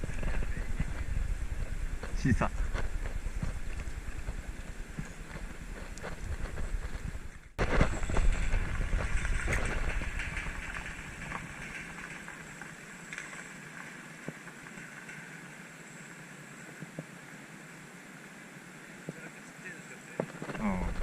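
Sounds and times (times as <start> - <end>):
wind on microphone: 0.0 - 11.8.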